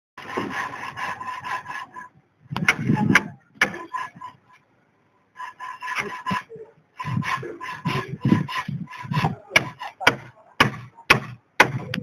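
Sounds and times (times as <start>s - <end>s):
rhythmic scraping strokes: 0.2s - 4.7s, 5.3s - 12.0s
sharp knocks: 9.1s - 12.0s.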